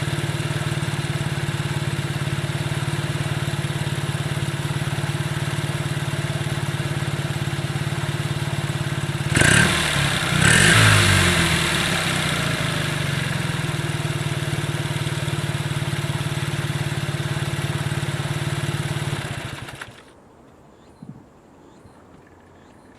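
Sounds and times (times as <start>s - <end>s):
engine revving: 0.0s - 20.1s
small truck engine idling: 0.0s - 20.2s.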